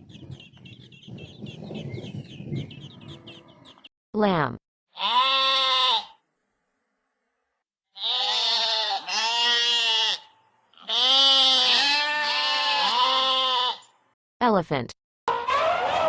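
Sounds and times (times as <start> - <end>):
lamb bleating: 4.9 - 6.2, 7.9 - 13.9.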